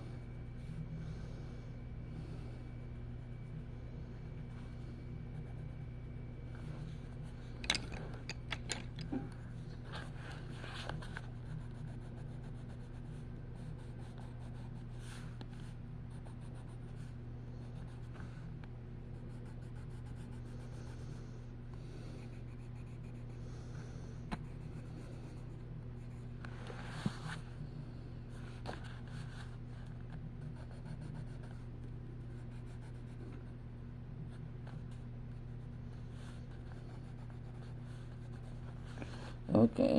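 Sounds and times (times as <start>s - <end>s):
low electrical hum: 0.0s - 39.9s.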